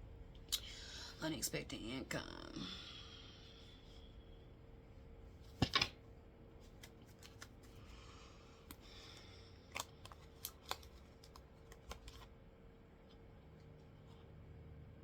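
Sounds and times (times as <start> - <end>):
faint steady hum: 0.0 - 15.0
cards snapping: 6.7 - 7.7, 9.7 - 12.3.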